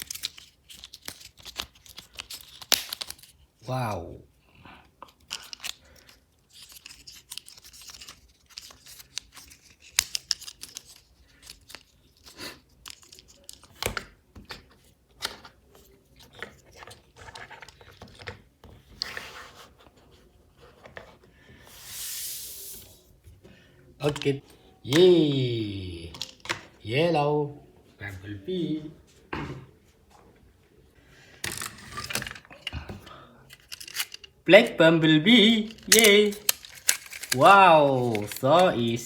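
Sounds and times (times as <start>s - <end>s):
packaging rustling and tearing: 0.0s - 3.4s, 5.2s - 13.8s, 33.5s - 34.4s, 35.3s - 39.0s
plastic toys clicking and snapping: 0.0s - 3.4s, 5.0s - 15.6s, 26.1s - 26.7s, 33.5s - 34.4s, 35.5s - 39.0s.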